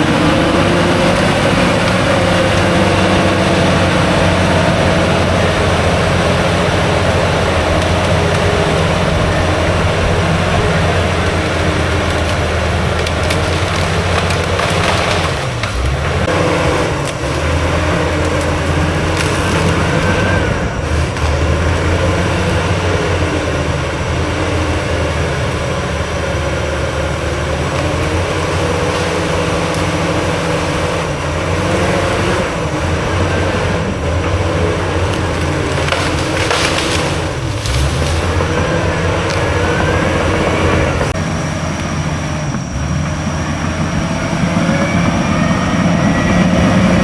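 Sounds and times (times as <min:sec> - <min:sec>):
wood cracking and crunching: 0:00.0 - 0:44.2
heavy diesel machine engine: 0:00.0 - 0:47.0.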